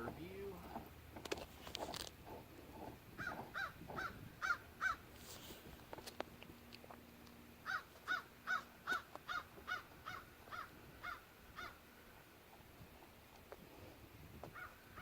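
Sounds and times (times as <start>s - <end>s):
bird calling: 3.2s - 5.1s, 7.6s - 11.8s, 14.5s - 15.0s.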